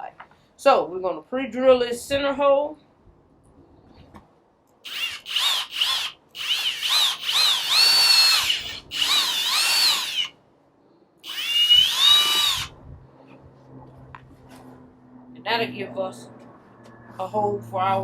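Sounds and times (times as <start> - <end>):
cordless drill motor whine: 4.9 - 10.3, 11.2 - 12.8.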